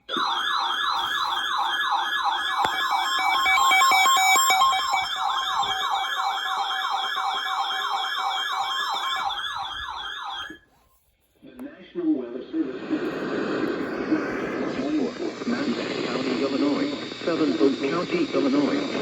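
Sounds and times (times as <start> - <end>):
electronic siren yelping: 0.1 - 10.6.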